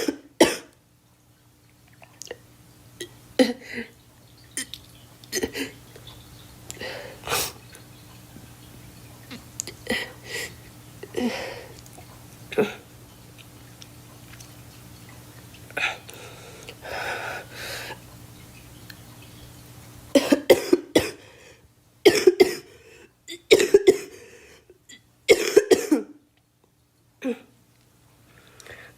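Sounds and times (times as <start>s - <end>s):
girl coughing: 0.0s - 0.7s, 7.3s - 7.6s, 20.2s - 21.2s, 22.1s - 22.7s, 23.3s - 24.2s, 25.3s - 26.2s
soft throat sounds: 6.7s - 7.8s.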